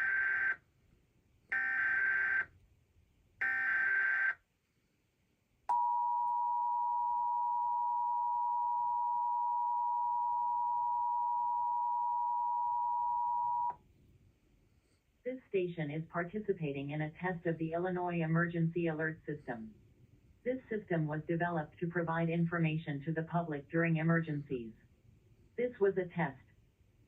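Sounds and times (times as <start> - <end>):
two-tone alarm: 0.0 - 0.6, 1.5 - 2.5, 3.4 - 4.4, 5.7 - 13.7.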